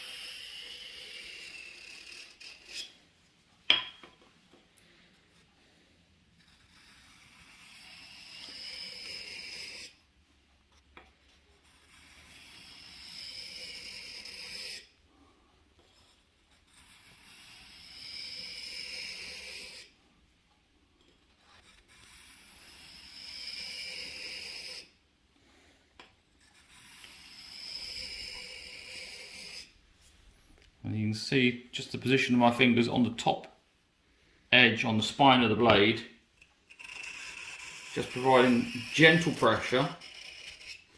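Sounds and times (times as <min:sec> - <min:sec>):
knife grinding on sharpening stone: 0:00.0 - 0:03.0, 0:06.5 - 0:10.0, 0:11.8 - 0:14.9, 0:16.7 - 0:19.9, 0:21.6 - 0:24.9, 0:26.4 - 0:29.7, 0:36.4 - 0:40.9.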